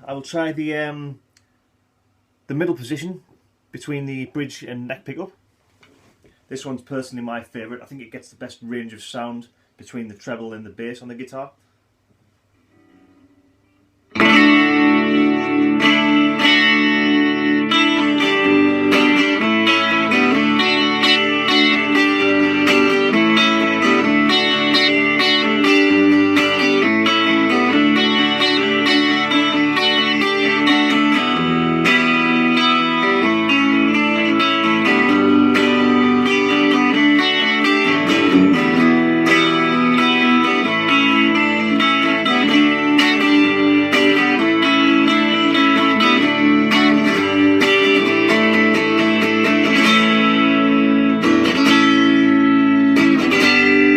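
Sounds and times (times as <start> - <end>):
electric guitar notes and chords: 12.7 - 53.9.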